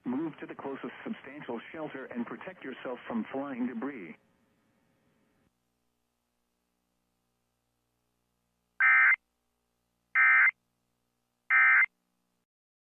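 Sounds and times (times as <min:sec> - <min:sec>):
digital data tone bursts: 0:08.8 - 0:09.2, 0:11.5 - 0:11.9.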